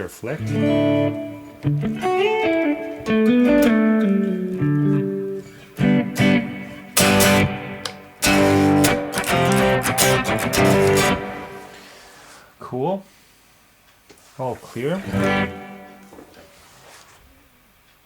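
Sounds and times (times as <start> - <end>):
electric guitar with long reverb: 0.4 - 12.1, 15.0 - 16.1.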